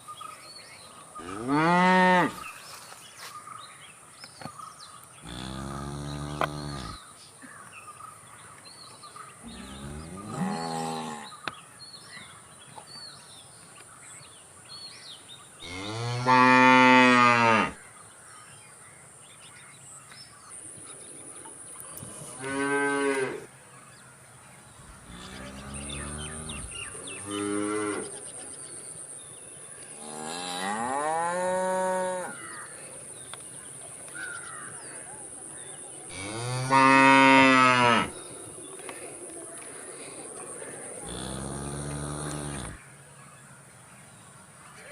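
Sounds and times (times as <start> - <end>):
cattle mooing: 5.2 - 7.0, 25.0 - 28.1, 41.0 - 42.8.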